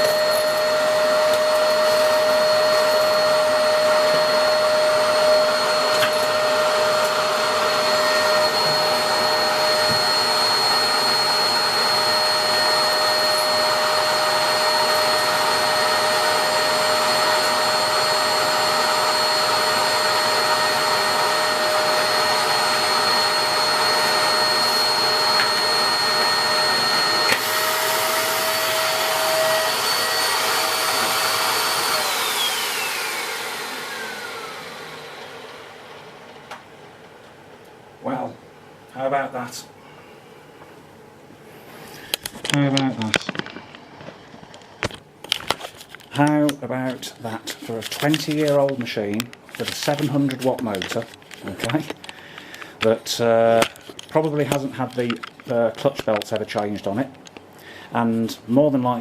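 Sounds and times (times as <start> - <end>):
vacuum motor winding down: 0.0 - 36.0
vacuum cleaner click: 0.0 - 36.7
vacuum cleaner motor whining: 0.0 - 37.3.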